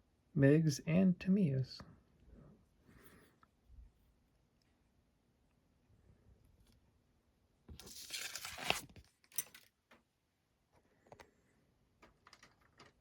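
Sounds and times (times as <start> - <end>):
packaging crinkling: 7.8 - 9.6
plastic parts clicking: 9.2 - 9.7, 12.0 - 13.0.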